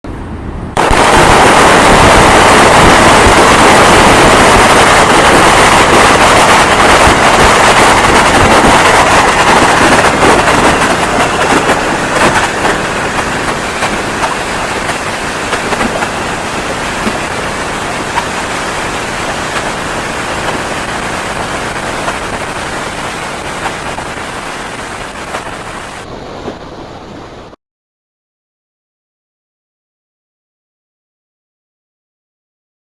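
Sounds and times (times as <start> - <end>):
firecrackers crackling: 0.8 - 26.4.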